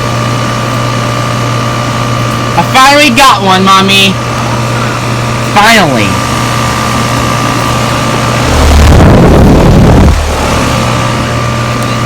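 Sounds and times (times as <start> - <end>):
air conditioner humming and whining: 0.0 - 12.0
low rumble: 8.1 - 11.5.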